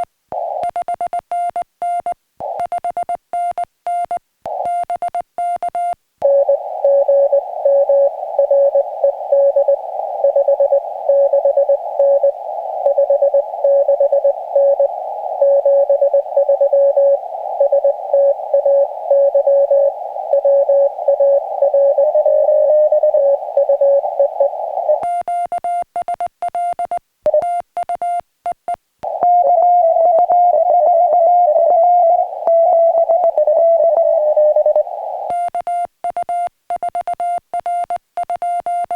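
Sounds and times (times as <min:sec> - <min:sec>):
radio receiver hiss: 0:06.2 - 0:25.2, 0:29.0 - 0:35.6.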